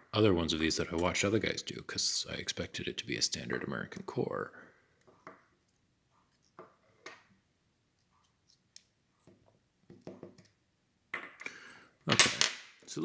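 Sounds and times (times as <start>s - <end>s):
faint padlock parts clicking: 4.9s - 9.6s.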